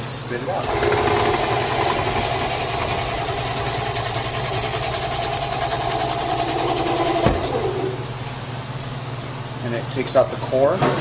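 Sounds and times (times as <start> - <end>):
electric cutter motor whirring: 0.6 - 8.1.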